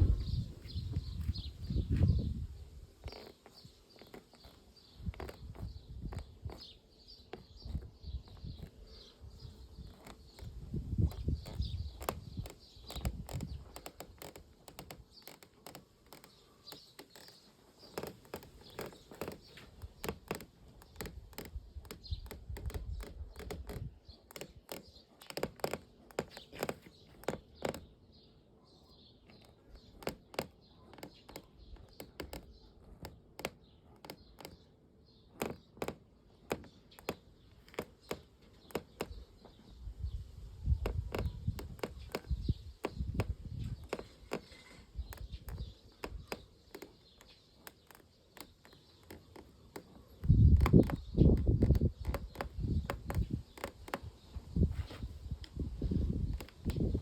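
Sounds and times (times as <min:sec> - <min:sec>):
low rumble: 0:00.0 - 0:02.4
car interior trim creaking: 0:09.4 - 0:27.9, 0:29.3 - 0:34.6, 0:35.3 - 0:39.6, 0:40.7 - 0:57.0.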